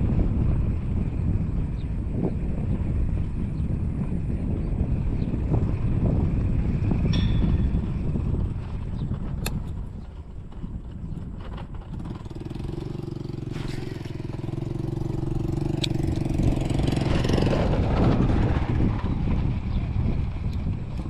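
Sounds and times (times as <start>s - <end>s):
low rumble: 0.0s - 21.0s
motor engine running: 0.0s - 21.0s
sharp clicks: 9.4s - 9.9s, 15.6s - 16.6s.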